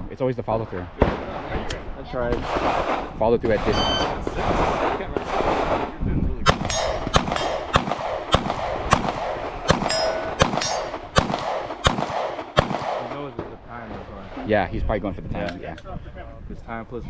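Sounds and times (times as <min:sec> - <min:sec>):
handgun shots: 0:06.5 - 0:13.3
metallic ring: 0:06.7 - 0:07.7, 0:09.8 - 0:11.0.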